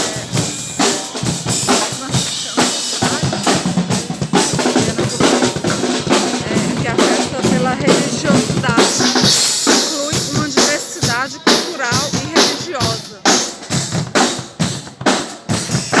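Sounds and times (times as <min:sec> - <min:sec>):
bass and snare drums marching beat: 0:00.0 - 0:16.0.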